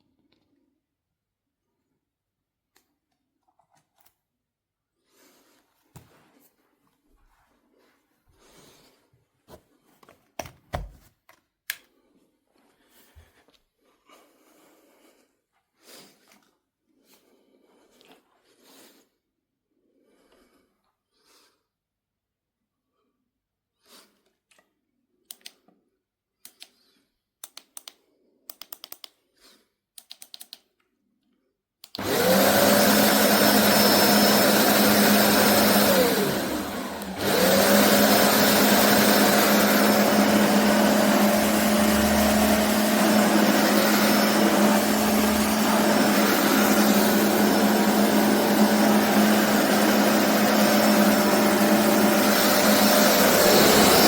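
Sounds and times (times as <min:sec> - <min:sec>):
carpet cleaner suction motor whining: 0:32.0 - 0:54.0.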